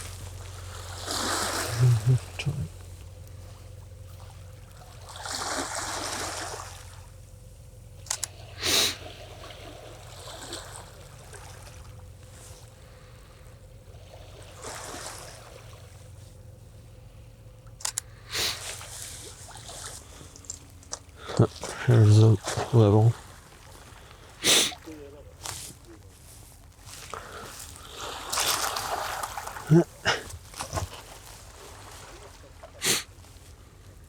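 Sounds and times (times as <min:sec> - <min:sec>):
steady low rumble: 0:00.0 - 0:05.4, 0:06.1 - 0:24.4
faint trickling water: 0:00.0 - 0:34.0
soft rustling swells: 0:18.1 - 0:34.0.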